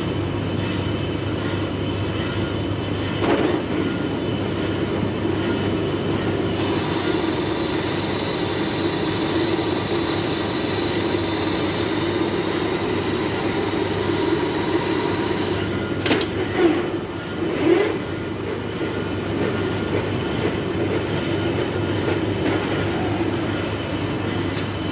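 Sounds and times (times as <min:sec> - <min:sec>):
metal lathe running: 0:05.7 - 0:22.4
cutting tool squealing on metal: 0:06.5 - 0:15.7.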